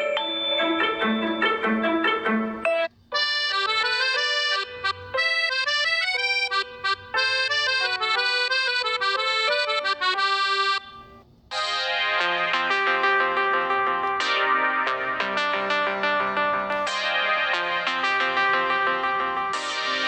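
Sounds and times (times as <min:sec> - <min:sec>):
phone ringtone melodies: 0:00.0 - 0:20.0.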